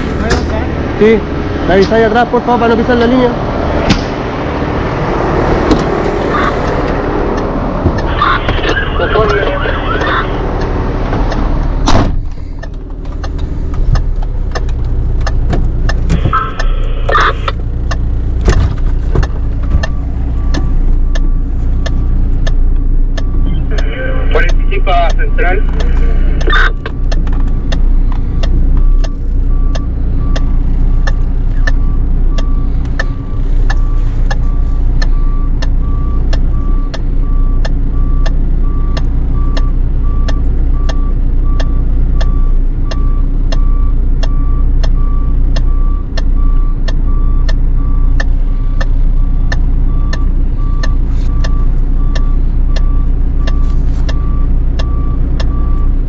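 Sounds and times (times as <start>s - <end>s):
fire truck engine running: 0.0s - 56.0s
sharp ticks: 12.6s - 18.2s, 19.2s - 23.4s, 24.5s - 31.8s, 35.0s - 55.9s.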